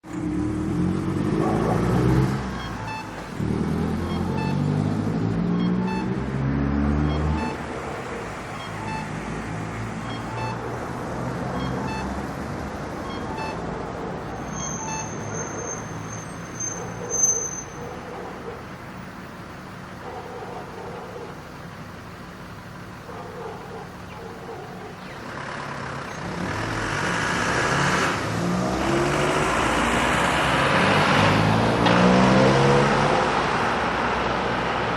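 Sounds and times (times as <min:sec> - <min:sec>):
vehicle engine pulling away: 0:00.0 - 0:09.9, 0:25.0 - 0:34.9
street traffic: 0:00.0 - 0:34.9
crossing signal beeping: 0:01.4 - 0:19.4.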